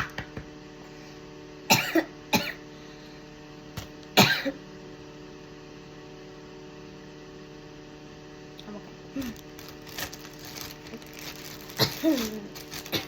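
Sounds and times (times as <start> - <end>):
girl coughing: 1.7 - 2.6, 4.2 - 4.6, 11.7 - 13.0.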